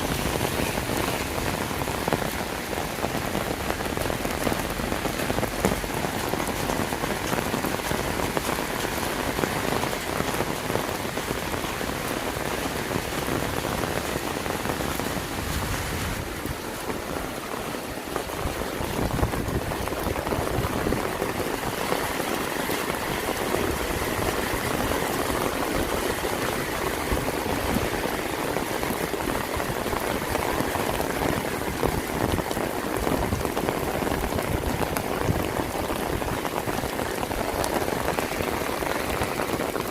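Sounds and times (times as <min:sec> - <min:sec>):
rain on hard surfaces: 0:00.0 - 0:39.9.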